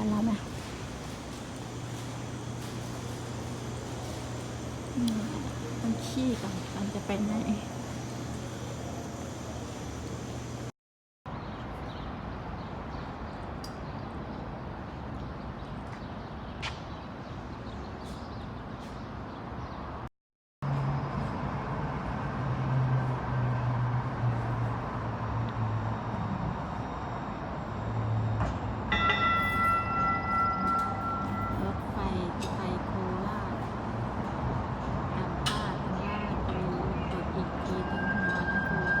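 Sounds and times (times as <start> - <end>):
train rumbling and rattling: 0.0 - 10.7, 28.3 - 39.0.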